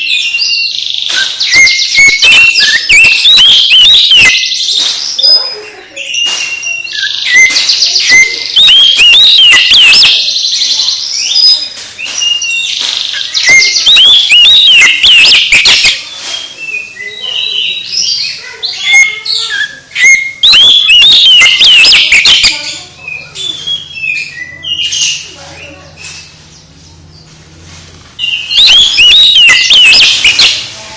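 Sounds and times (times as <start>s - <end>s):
bird singing: 0.0s - 27.4s, 28.2s - 30.9s.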